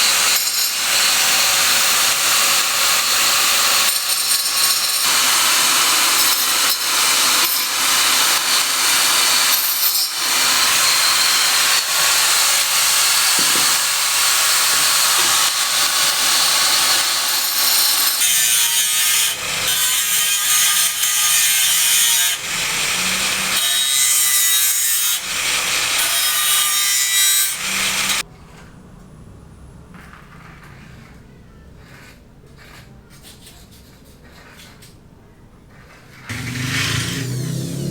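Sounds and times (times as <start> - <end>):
saw rasping: 0.0 - 28.2, 36.3 - 37.9.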